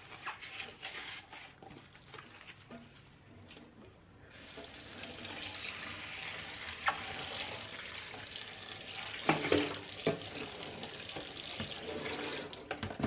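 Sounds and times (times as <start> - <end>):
tap running water into sink: 4.5 - 13.0.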